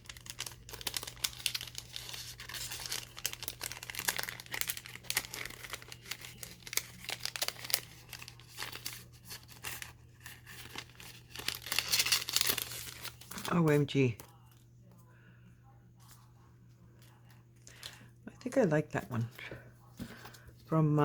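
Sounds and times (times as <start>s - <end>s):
paper crinkling and rustling: 0.0s - 15.0s.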